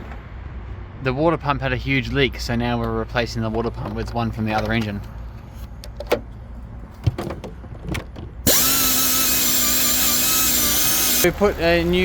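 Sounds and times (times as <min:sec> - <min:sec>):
cordless drill whining: 0:08.5 - 0:11.3.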